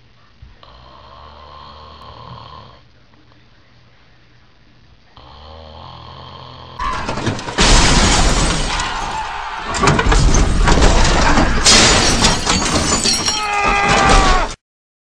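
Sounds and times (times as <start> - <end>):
crashing and shattering glass: 6.8 - 14.6.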